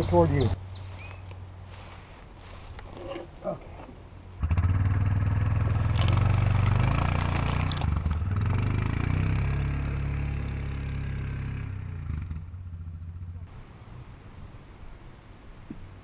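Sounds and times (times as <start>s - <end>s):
engine starting and running: 4.4s - 12.6s.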